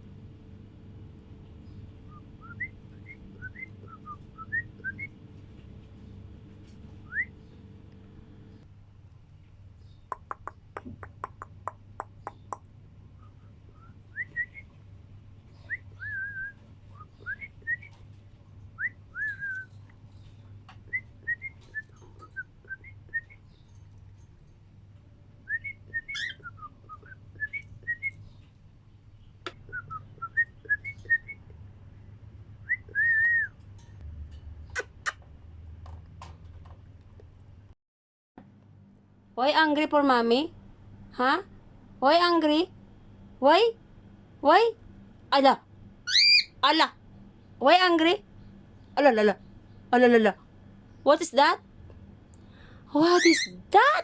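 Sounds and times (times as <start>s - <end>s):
cockatiel whistling: 25.5s - 28.1s, 46.1s - 46.5s.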